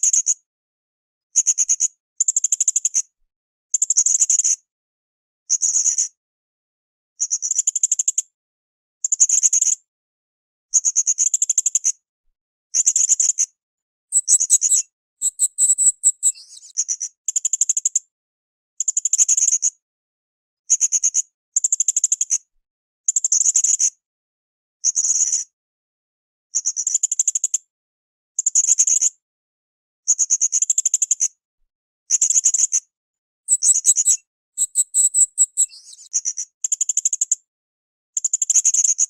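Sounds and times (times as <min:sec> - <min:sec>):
parrot shrill trilled calls: 0:14.2 - 0:16.4, 0:33.5 - 0:35.7
parrot chattering: 0:33.5 - 0:35.7.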